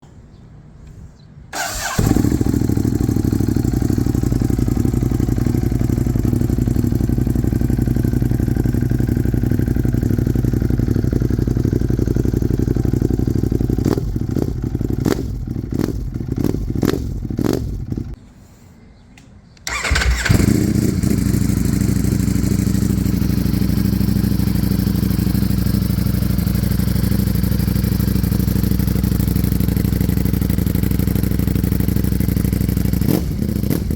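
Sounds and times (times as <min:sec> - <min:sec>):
motorcycle starting and idling: 0:01.5 - 0:18.2, 0:19.6 - 0:33.9
motorcycle revving: 0:01.6 - 0:18.2, 0:19.7 - 0:33.9.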